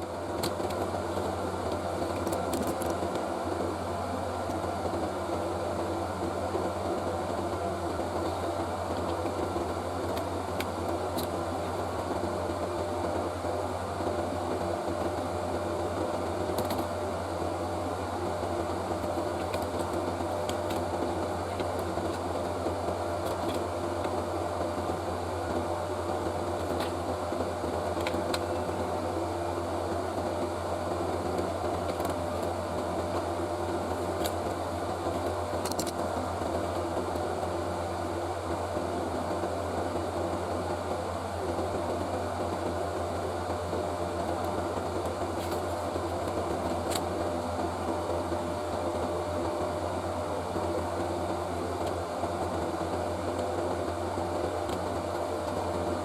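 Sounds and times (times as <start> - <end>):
electric fan humming: 0.0 - 56.0.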